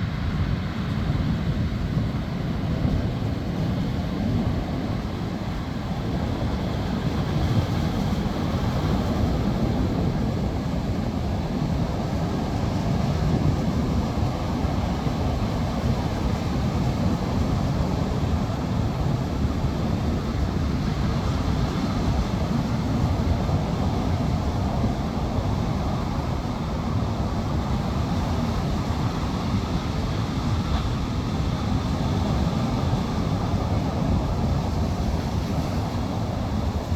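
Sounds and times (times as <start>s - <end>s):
sea surf washing onto beach: 0.0s - 36.9s.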